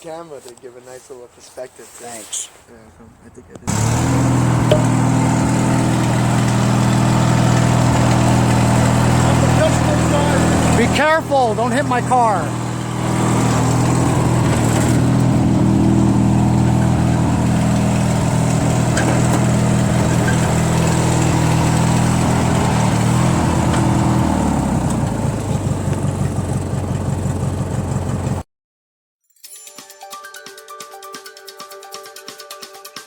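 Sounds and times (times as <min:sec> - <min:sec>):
lawn tractor engine running: 0:03.7 - 0:28.4.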